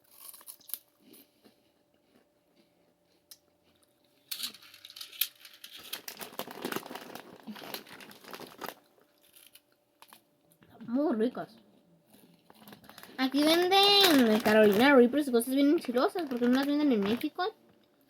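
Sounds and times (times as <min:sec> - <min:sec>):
snack packaging crinkling: 0:00.0 - 0:01.3, 0:03.6 - 0:10.2, 0:12.1 - 0:17.5.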